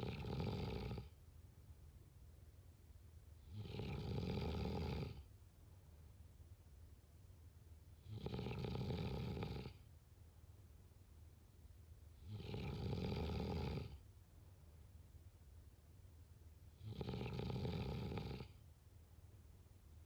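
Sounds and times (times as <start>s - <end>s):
person snoring: 0.0s - 1.1s, 3.5s - 5.2s, 8.0s - 9.8s, 12.3s - 14.0s, 16.8s - 18.5s.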